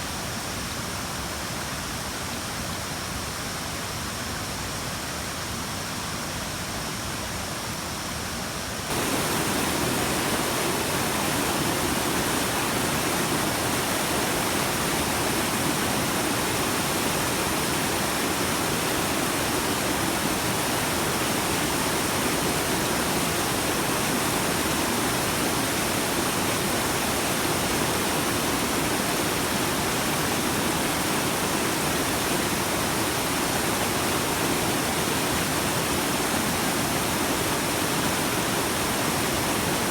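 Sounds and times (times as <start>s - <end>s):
steady rushing noise: 8.9s - 34.9s.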